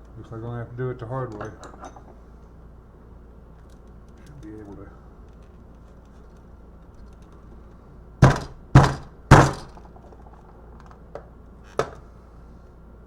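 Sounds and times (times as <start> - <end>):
hammer striking plastic case: 8.2 - 10.4.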